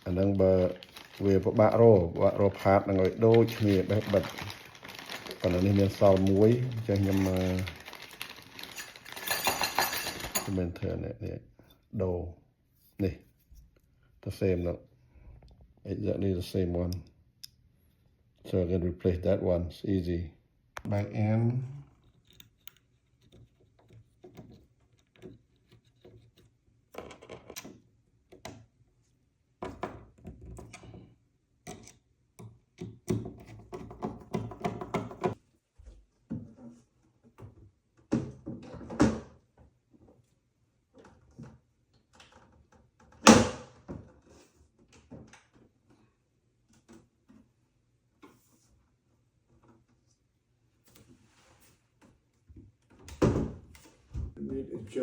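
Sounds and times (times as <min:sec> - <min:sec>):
hinge and wood clicks and knocks: 0:31.7 - 0:35.4.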